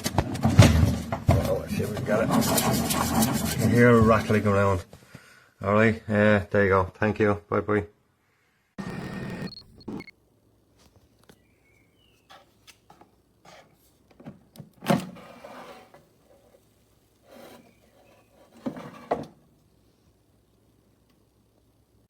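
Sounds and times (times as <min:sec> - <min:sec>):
handling knocks and rubbing: 0:00.0 - 0:04.4.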